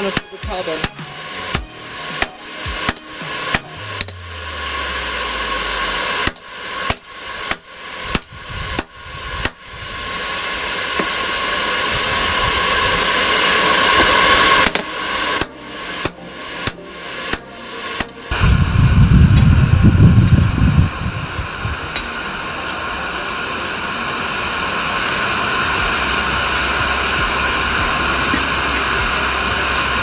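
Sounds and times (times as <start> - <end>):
hammer striking steel on anvil: 0.0 - 4.2, 5.9 - 9.6, 14.0 - 18.2
steady rushing noise: 0.0 - 30.0.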